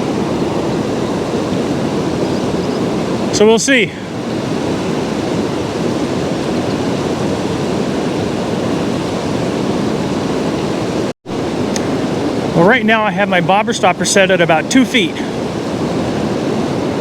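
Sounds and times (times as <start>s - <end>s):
river water rushing: 0.0s - 17.0s.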